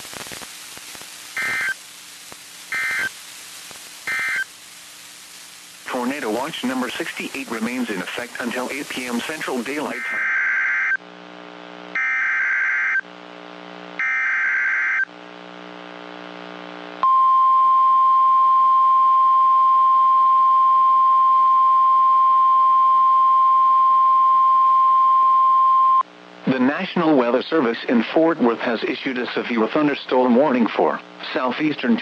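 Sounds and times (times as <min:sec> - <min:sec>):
digital data bursts: 0:01.3 - 0:01.8, 0:02.7 - 0:03.2, 0:04.0 - 0:04.6, 0:05.9 - 0:11.0
steady warning alarm tone: 0:02.7 - 0:03.1, 0:04.1 - 0:04.5, 0:09.8 - 0:11.0, 0:12.0 - 0:13.0, 0:14.0 - 0:15.1.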